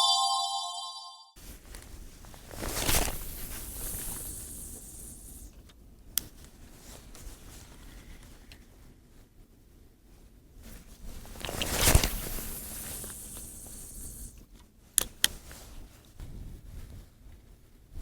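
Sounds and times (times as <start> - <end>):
line hissing off reel: 12.1 - 14.4.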